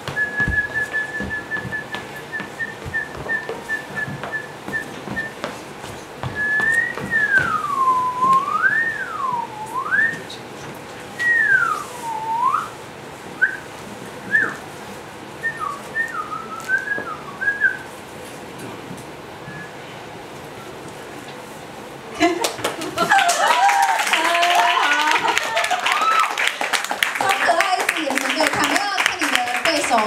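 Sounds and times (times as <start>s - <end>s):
person whistling: 0.1s - 5.4s, 6.3s - 10.3s, 11.2s - 12.8s, 13.4s - 13.7s, 14.3s - 14.6s, 15.4s - 17.9s, 19.4s - 19.8s.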